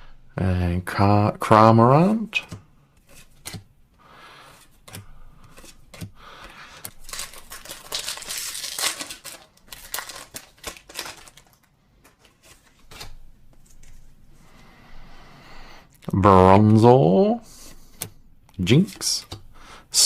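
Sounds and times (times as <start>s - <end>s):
foil wrapper crinkling and tearing: 6.7s - 13.2s.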